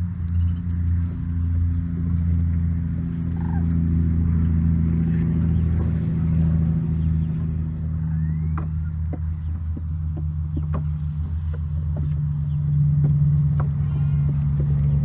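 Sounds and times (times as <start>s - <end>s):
engine droning steadily: 0.0s - 15.0s.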